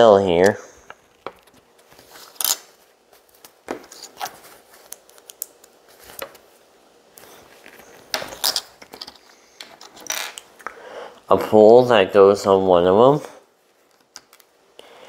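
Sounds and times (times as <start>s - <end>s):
plastic pieces scraping: 7.6s - 10.4s.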